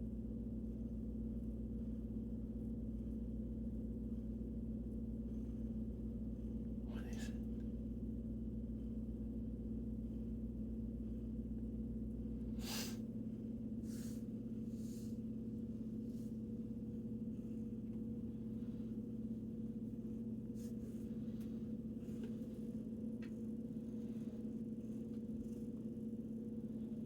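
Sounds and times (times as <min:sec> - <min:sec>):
steady humming tone: 0:00.0 - 0:27.0
short soft hissing: 0:12.6 - 0:13.0.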